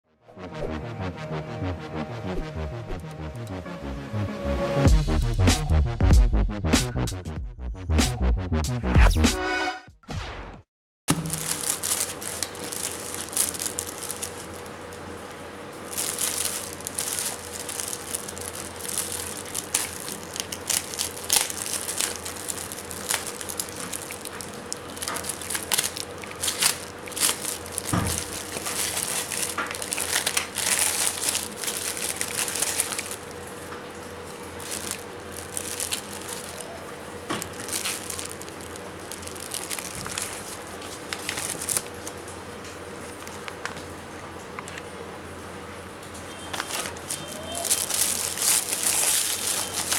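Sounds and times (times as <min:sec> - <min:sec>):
packaging crinkling and rustling: 0:11.1 - 0:45.0, 0:46.1 - 0:49.9
faint steady hum: 0:11.2 - 0:49.9.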